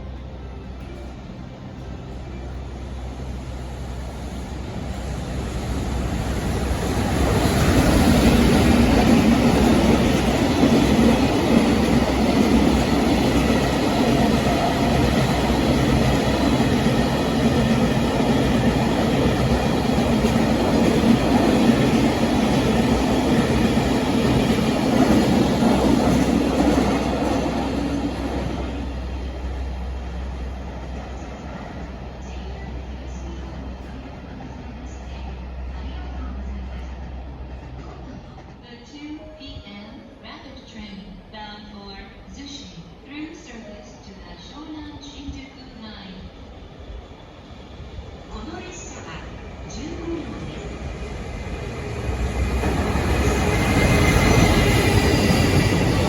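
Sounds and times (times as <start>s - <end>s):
freight train passing: 0.0s - 56.0s.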